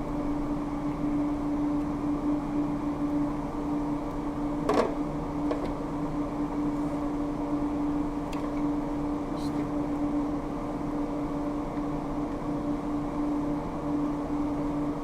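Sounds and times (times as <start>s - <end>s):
steady machine hum: 0.0s - 15.0s.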